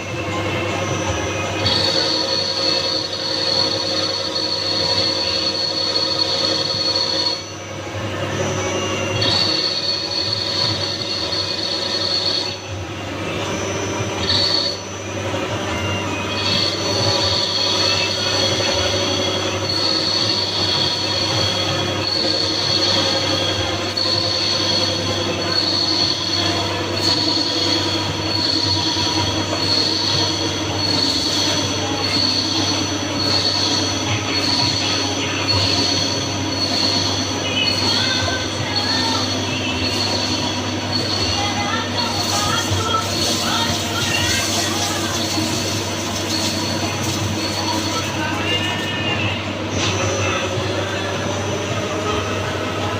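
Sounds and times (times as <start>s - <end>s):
lathe machine hum: 0.0s - 52.9s
high squeal: 0.8s - 52.9s.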